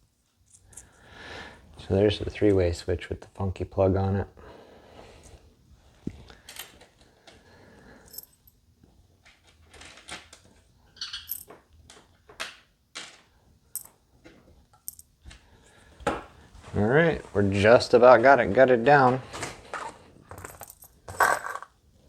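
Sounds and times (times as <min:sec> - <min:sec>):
small metal parts clicking: 0:11.0 - 0:11.5.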